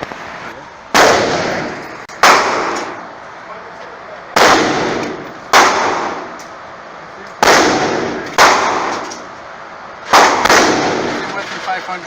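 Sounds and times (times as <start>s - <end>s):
gunshots with echo: 0.9s - 3.1s, 4.4s - 6.4s, 7.4s - 9.2s, 10.1s - 11.3s.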